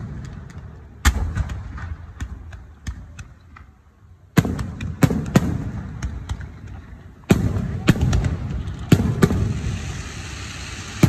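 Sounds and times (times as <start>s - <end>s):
fireworks booming: 0.0s - 3.4s, 4.3s - 11.0s
fireworks cracking: 0.0s - 11.0s.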